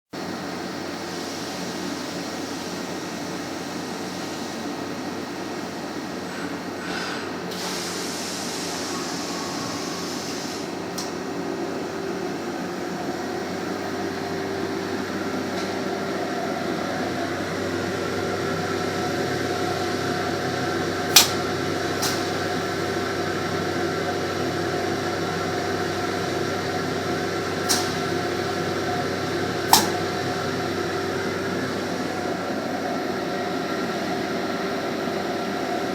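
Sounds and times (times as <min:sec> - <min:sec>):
machine hum: 0:08.8 - 0:35.9.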